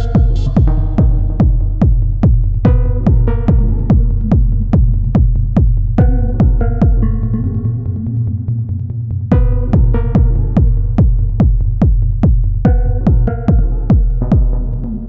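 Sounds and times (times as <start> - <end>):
synth chord stabs: 0.0 - 1.0
kick drum: 0.0 - 7.5, 9.3 - 15.0
steady synth bass: 0.0 - 15.0.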